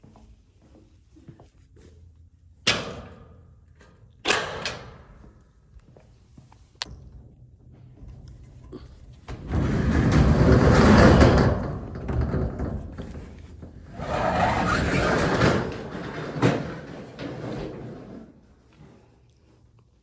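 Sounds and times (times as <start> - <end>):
sliding door opening: 9.3 - 18.4.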